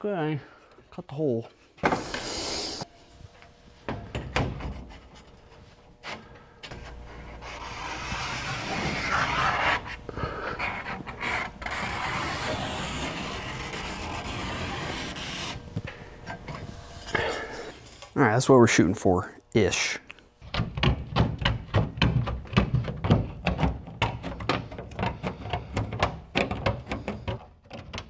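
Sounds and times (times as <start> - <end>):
hand saw rasping strokes: 2.0 - 2.9, 6.8 - 15.6.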